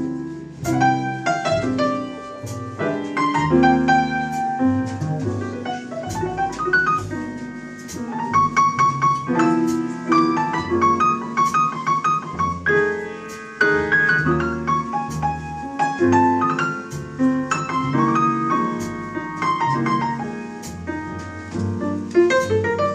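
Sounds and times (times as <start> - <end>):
bass notes: 0.0 - 22.9
drums: 0.0 - 22.9
piano runs and chords: 0.0 - 22.9.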